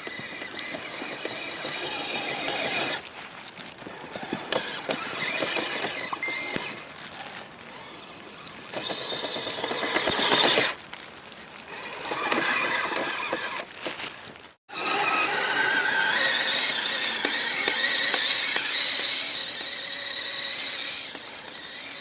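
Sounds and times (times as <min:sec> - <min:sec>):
electric motor whining: 0:00.0 - 0:03.0, 0:14.7 - 0:22.0
tracks crackling through wet snow: 0:00.0 - 0:22.0.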